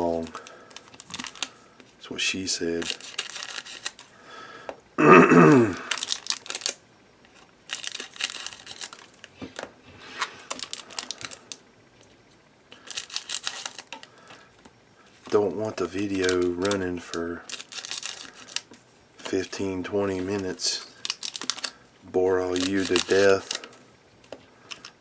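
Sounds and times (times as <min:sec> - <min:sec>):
wrappers crinkling: 0:00.0 - 0:01.6, 0:02.4 - 0:04.1, 0:05.5 - 0:09.3, 0:10.0 - 0:11.6, 0:12.8 - 0:14.4, 0:15.2 - 0:23.8, 0:24.6 - 0:25.0
short loud vocal sound: 0:05.0 - 0:05.9.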